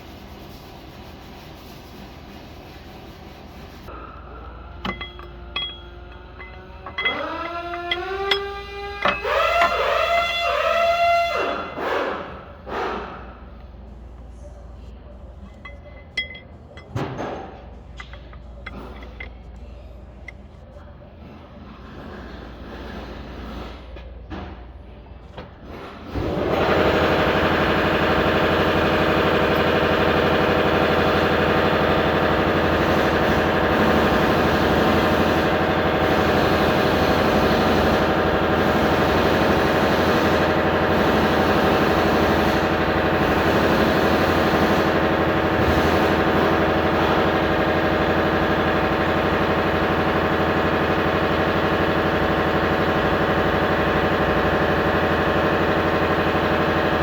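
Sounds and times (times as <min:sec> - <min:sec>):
car engine starting and idling: 0:04.7 - 0:11.7.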